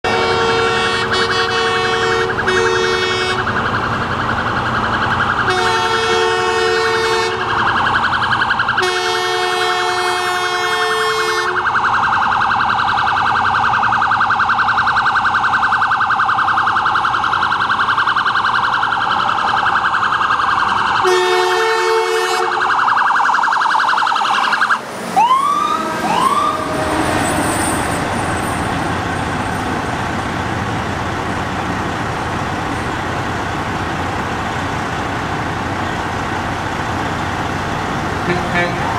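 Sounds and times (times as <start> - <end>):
air horn blasts: 0.0 - 3.5, 5.5 - 7.5, 8.8 - 11.7, 21.0 - 22.6, 38.2 - 38.9
ambulance electronic siren: 0.2 - 28.6.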